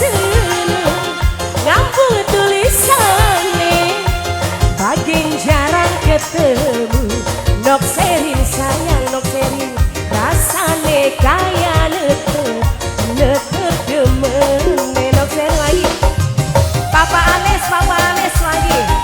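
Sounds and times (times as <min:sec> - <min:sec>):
busy drum beat: 0:00.0 - 0:19.0.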